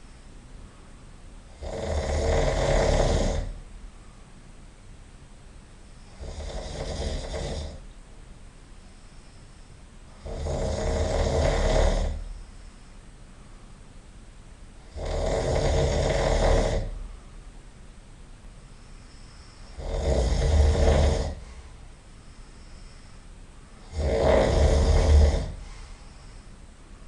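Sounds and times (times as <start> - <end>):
quiet breathing: 0.0 - 4.6, 8.6 - 14.0, 14.7 - 17.7, 18.5 - 27.0
man snoring loudly: 1.5 - 3.6, 6.1 - 7.8, 10.1 - 12.3, 14.8 - 17.0, 19.6 - 21.5, 23.8 - 25.7.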